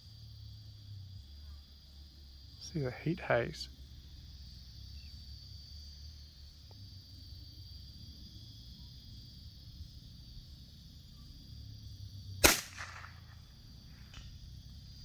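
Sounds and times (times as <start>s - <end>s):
insects buzzing: 0.0s - 15.0s
rifle shot with echo: 12.4s - 13.5s.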